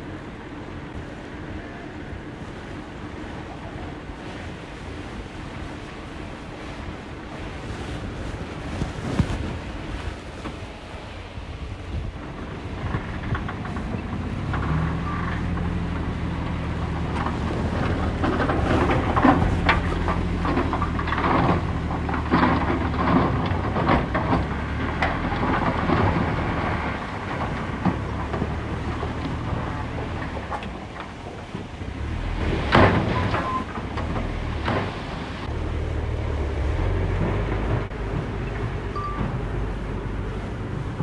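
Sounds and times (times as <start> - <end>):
heavy diesel engine running: 11.9 - 41.0.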